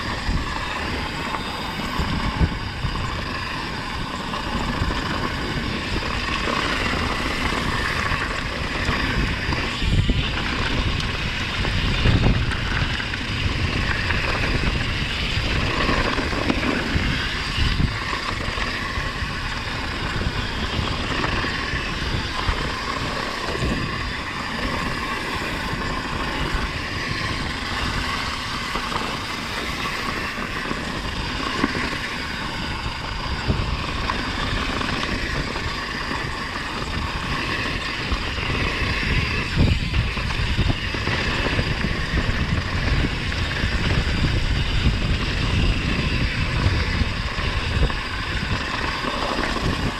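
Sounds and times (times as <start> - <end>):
mountain bike rattling on dirt trail: 0.0 - 49.9
wind buffeting microphone: 0.0 - 49.9.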